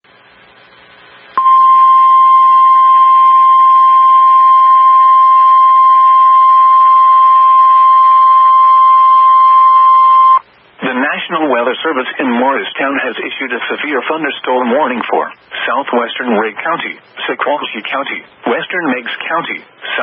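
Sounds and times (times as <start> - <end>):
faint radio hiss: 0.1 - 3.0, 9.9 - 20.0
loud steady high alarm tone: 1.4 - 10.4.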